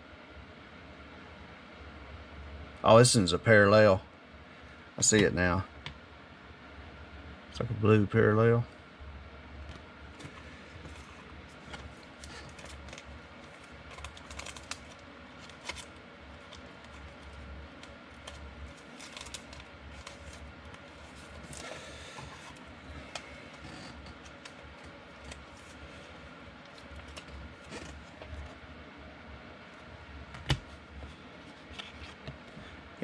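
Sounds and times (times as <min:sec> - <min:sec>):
steady low hum: 0:00.0 - 0:33.0
wrappers rustling: 0:10.9 - 0:17.5, 0:18.1 - 0:22.7.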